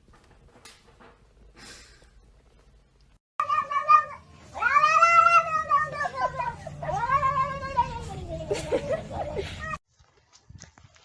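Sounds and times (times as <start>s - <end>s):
cat meowing and yowling: 3.4s - 8.0s.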